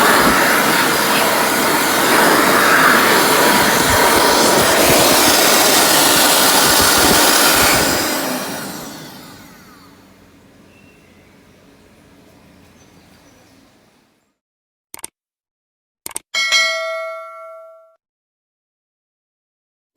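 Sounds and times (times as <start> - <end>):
handwashing unit rushing: 0.0 - 14.0.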